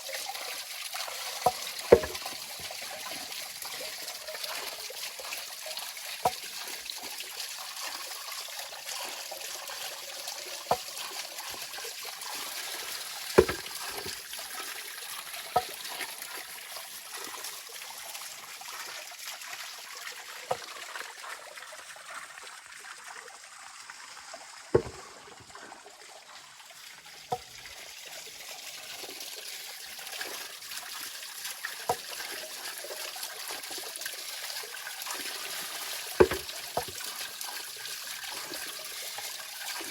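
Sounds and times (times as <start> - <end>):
stream water flowing: 0.0 - 39.9
sharp knocks: 1.9 - 2.3, 13.4 - 14.1, 24.8 - 25.0, 36.2 - 36.9.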